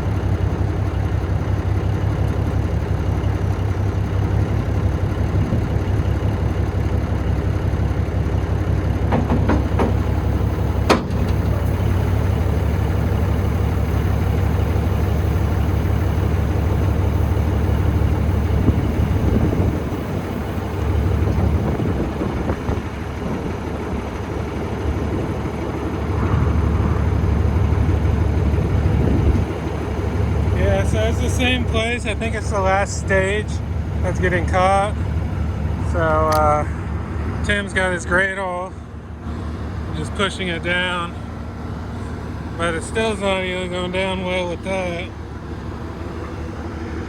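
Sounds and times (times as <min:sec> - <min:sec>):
heavy engine idling: 0:00.0 - 0:47.0
sharp knock: 0:09.1 - 0:10.1.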